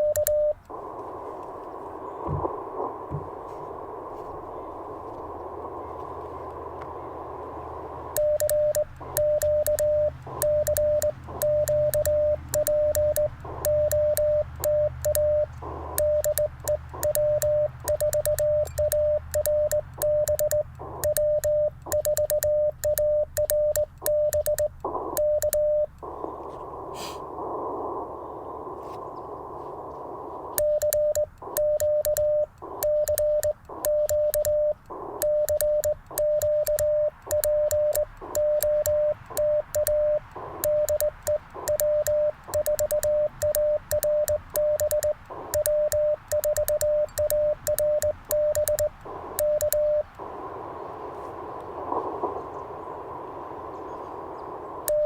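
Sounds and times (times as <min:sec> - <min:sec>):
morse code tone: 0:00.0 - 0:00.6, 0:08.0 - 0:26.2, 0:30.6 - 0:50.3
morse key contacts clicking: 0:00.0 - 0:00.8, 0:08.0 - 0:26.1, 0:30.6 - 0:50.3
receiver hiss: 0:00.0 - 0:55.0.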